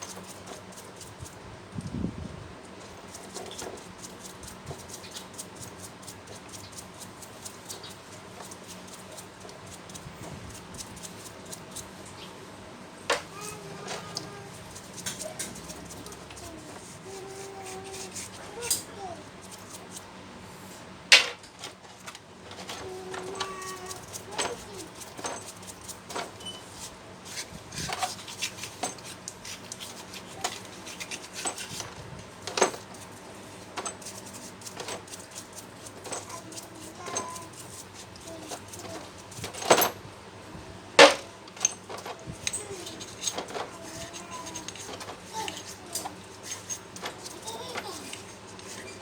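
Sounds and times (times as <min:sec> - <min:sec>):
metal tools clinking and knocking: 0:21.1 - 0:26.7, 0:32.4 - 0:33.1, 0:35.9 - 0:40.0, 0:41.0 - 0:49.0.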